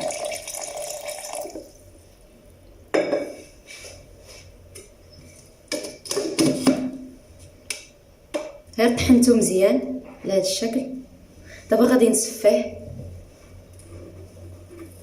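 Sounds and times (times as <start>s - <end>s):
water pouring into a glass jar: 0.0s - 1.8s.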